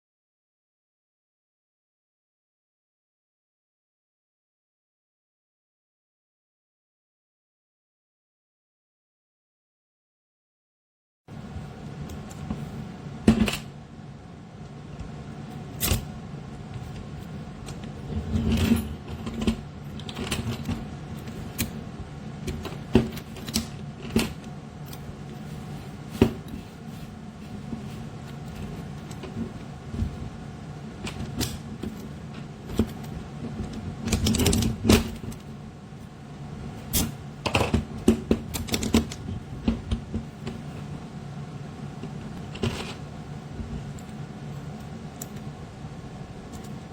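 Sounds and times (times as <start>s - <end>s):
steady low hum: 11.3s - 46.9s.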